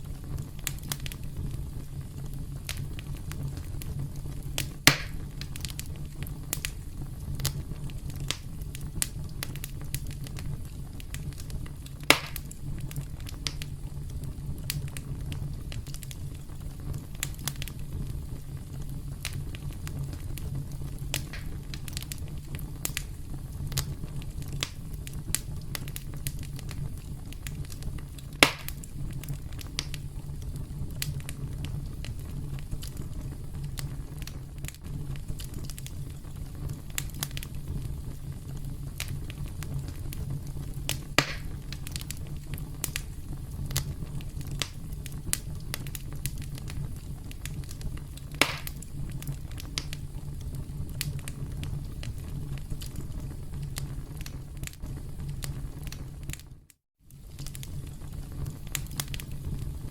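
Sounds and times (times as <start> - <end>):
campfire crackling: 0.0 - 59.9
fire low rumble: 0.0 - 59.9
sharp wood snaps and pops: 4.6 - 5.8, 12.0 - 12.5, 21.1 - 22.1, 28.4 - 28.8, 40.9 - 42.1, 47.7 - 48.8.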